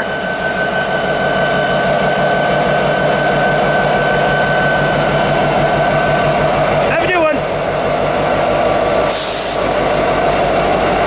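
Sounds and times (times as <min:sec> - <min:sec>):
diesel locomotive idling: 0:00.0 - 0:11.0.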